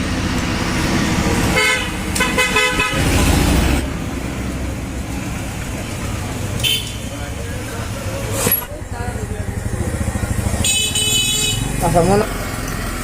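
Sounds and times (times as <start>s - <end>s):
low rumble of traffic: 0.0s - 13.0s
vehicle horn: 1.5s - 3.2s, 6.6s - 7.1s, 10.5s - 11.8s.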